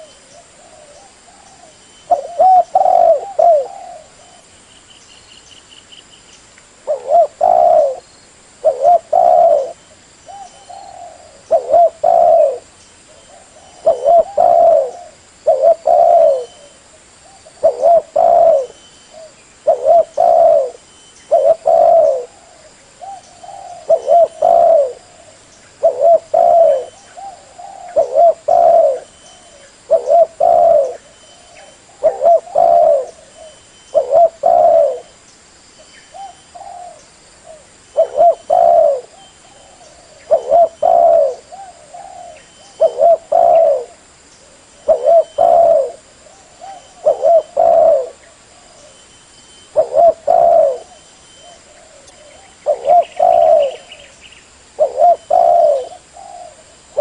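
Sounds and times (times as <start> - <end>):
dove cooing: 0.0 - 4.5, 6.8 - 35.2, 36.1 - 49.1, 49.7 - 57.0.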